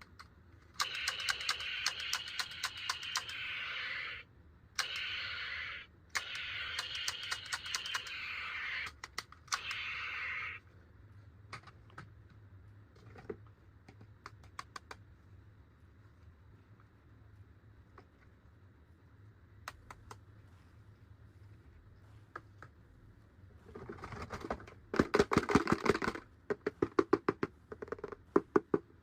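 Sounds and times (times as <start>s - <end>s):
small plastic clicks: 0.0s - 3.7s, 8.8s - 10.1s, 13.9s - 15.1s.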